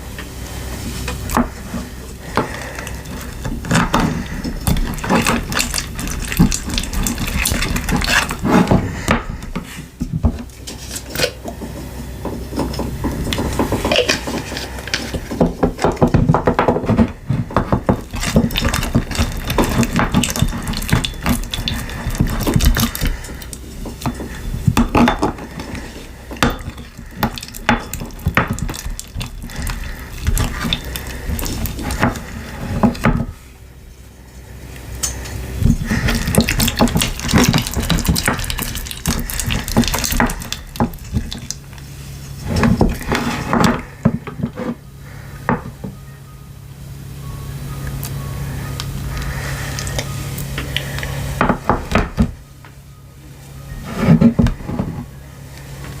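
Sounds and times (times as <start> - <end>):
slime squished by hand: 35.6 - 41.9.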